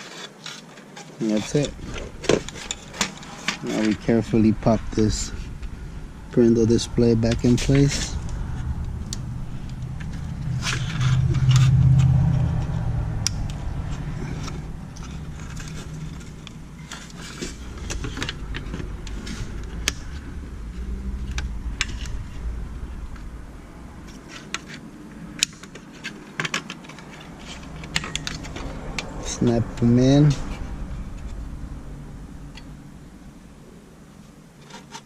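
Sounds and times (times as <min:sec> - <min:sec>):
low rumble: 0:01.6 - 0:25.6, 0:27.0 - 0:34.4
plastic parts clicking: 0:25.4 - 0:29.2.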